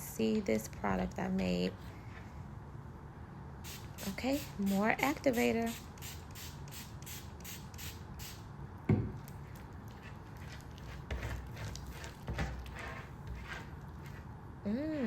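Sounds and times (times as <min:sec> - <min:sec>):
sticky slime squishing: 0:09.2 - 0:14.2.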